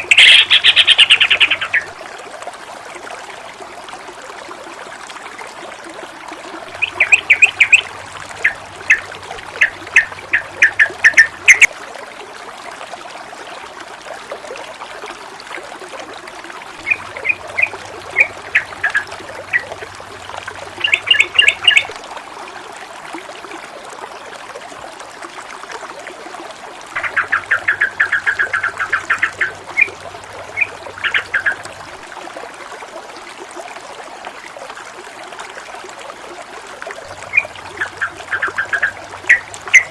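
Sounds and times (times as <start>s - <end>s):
bird chattering: 0.0s - 1.9s, 6.8s - 11.7s, 16.8s - 19.7s, 20.8s - 21.9s, 27.0s - 29.9s, 30.6s - 31.6s, 37.3s - 39.9s
running splashing water: 0.0s - 39.9s.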